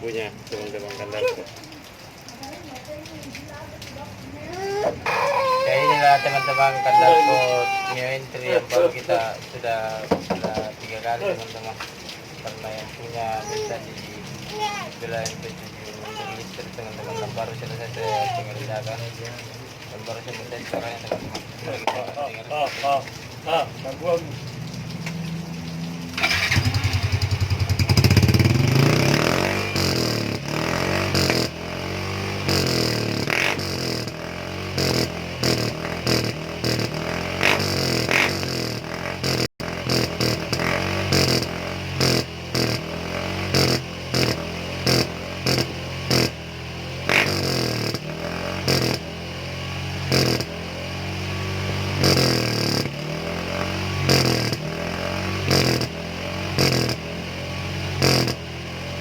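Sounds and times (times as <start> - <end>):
scooter engine revving and idling: 26.0 - 59.0.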